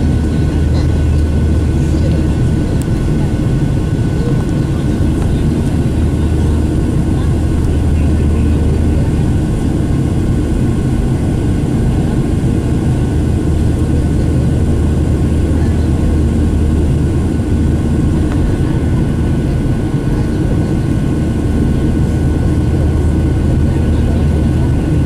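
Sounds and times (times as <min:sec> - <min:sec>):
faint steady engine whine: 0:00.0 - 0:25.0
jet engine cabin rumble: 0:00.0 - 0:25.0.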